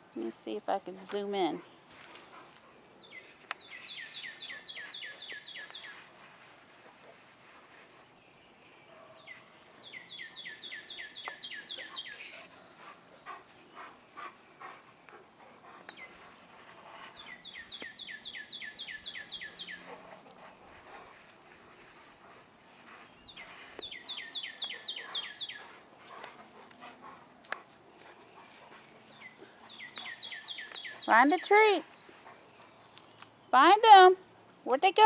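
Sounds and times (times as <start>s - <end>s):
songbird singing: 0.0s - 35.0s
faint rustling: 1.0s - 10.0s, 19.8s - 24.8s.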